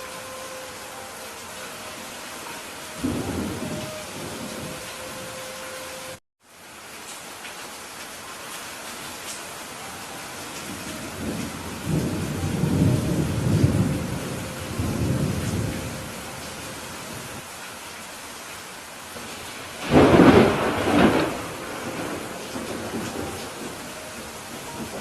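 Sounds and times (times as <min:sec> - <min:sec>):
steady rain: 0:00.0 - 0:25.0
rolling thunder rumble: 0:03.0 - 0:05.4, 0:10.6 - 0:17.4, 0:19.8 - 0:25.0
loud thunderclap: 0:19.8 - 0:23.8.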